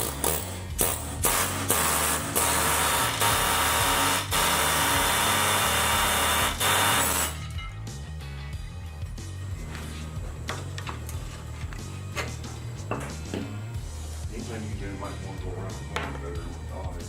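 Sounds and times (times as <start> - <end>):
power tool running: 0.0 - 7.4
background music: 0.0 - 17.0.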